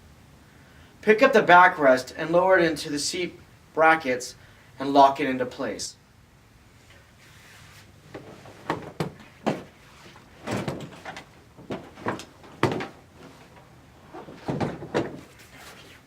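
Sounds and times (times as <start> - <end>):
chair backrest knocks and clunks: 8.1 - 15.4.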